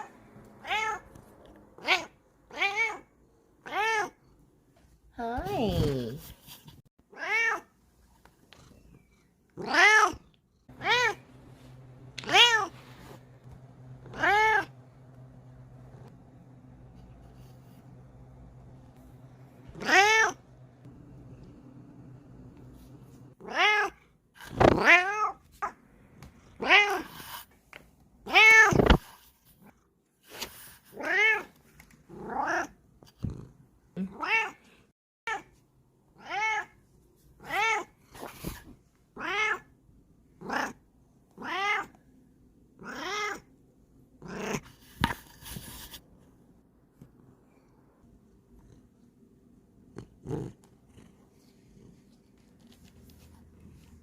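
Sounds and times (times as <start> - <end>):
cat meowing: 7.1 - 7.7, 19.8 - 20.4, 41.4 - 41.9.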